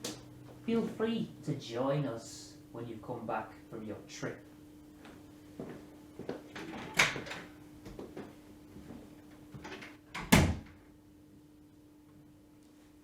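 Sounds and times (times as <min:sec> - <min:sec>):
door shutting with thud: 0:09.7 - 0:10.8.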